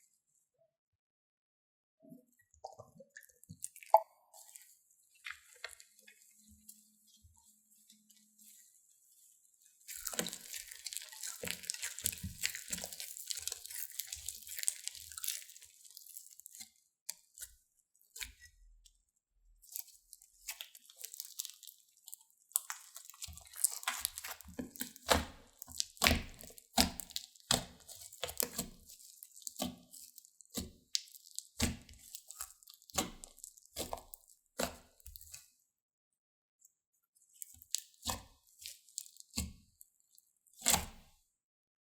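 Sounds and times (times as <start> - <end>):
slime crackling and tearing: 9.9 - 16.6, 20.2 - 34.4, 37.4 - 39.4.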